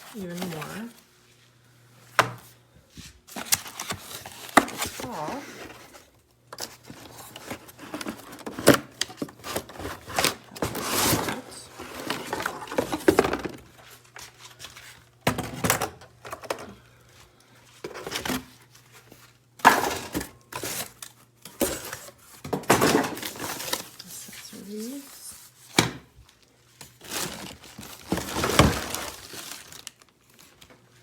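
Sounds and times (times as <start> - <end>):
packaging rustling: 3.3 - 15.0, 26.8 - 30.7
plastic parts knocking and clattering: 6.5 - 13.7, 15.2 - 16.8, 21.4 - 23.8, 27.1 - 29.8.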